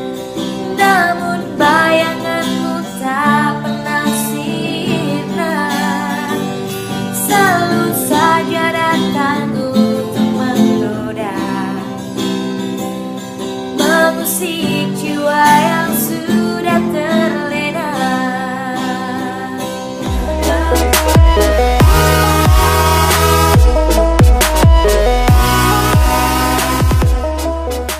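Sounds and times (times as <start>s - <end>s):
acoustic guitar strumming: 0.0s - 27.9s
woman singing: 0.5s - 12.5s, 13.7s - 21.8s.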